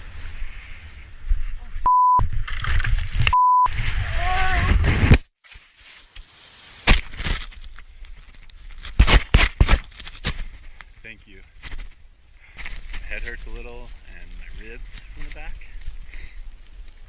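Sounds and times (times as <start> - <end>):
high censor bleeps: 1.8 - 2.2, 3.3 - 3.7
quiet rustling: 9.8 - 17.0.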